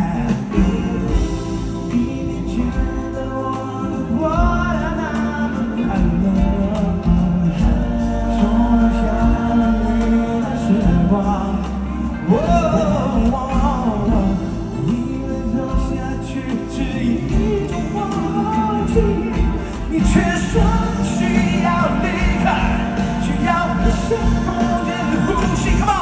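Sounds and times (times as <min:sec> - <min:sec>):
live band music: 0:00.0 - 0:26.0
wordless singing with wavering pitch: 0:00.0 - 0:26.0.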